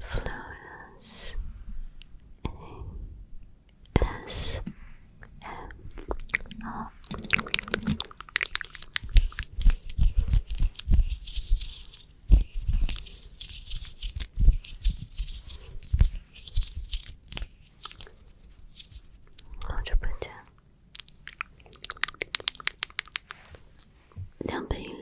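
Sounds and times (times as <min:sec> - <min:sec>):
scratchy hiss: 0:06.5 - 0:20.1.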